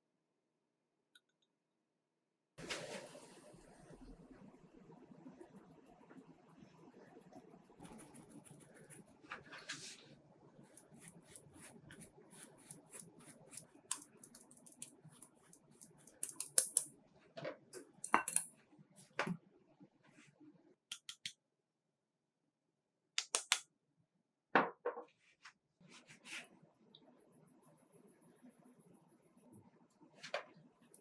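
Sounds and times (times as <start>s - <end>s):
utensils tapping against a bowl: 13.5s - 14.9s, 15.5s - 16.9s, 17.8s - 18.5s.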